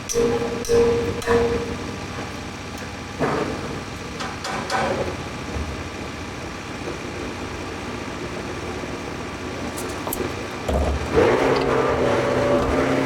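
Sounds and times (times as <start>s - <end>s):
diesel engine running: 5.9s - 13.0s.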